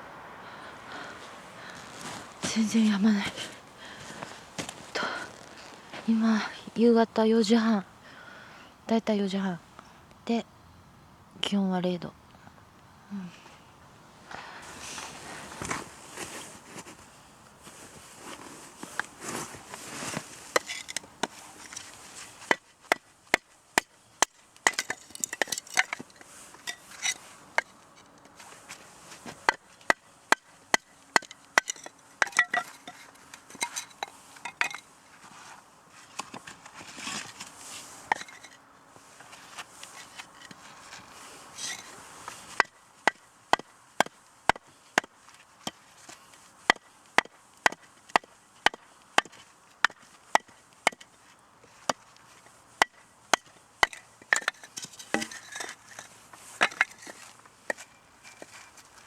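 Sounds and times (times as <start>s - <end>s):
firewood chopping strikes: 20.5s - 26.1s, 29.4s - 34.8s, 38.1s - 38.5s, 42.5s - 45.8s, 46.7s - 51.1s, 52.8s - 56.0s, 56.6s - 58.5s
wood handling noise: 52.8s - 59.0s.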